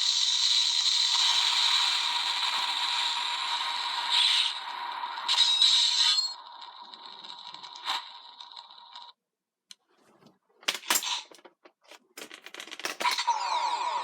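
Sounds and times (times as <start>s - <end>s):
toy speaker hiss with electronic tones: 0.0s - 8.9s
plastic toy clicks and knocks: 10.6s - 13.3s.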